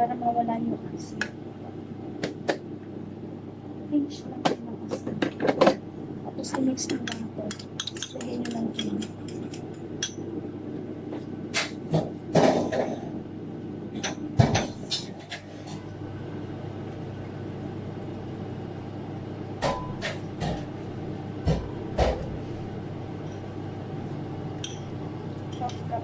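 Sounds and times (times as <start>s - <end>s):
steady low hum: 0.0s - 26.0s
dishes knocking and clinking: 6.8s - 10.2s
spoon against bowl: 7.0s - 10.2s.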